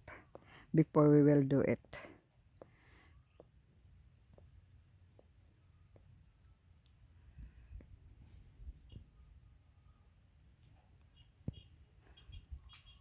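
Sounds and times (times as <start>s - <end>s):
cricket chirping: 0.0s - 13.0s.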